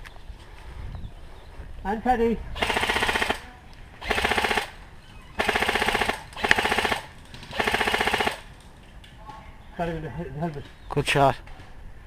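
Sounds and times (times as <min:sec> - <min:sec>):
airsoft gun full-auto bursts: 0:02.6 - 0:03.4, 0:04.0 - 0:04.8, 0:05.4 - 0:08.5.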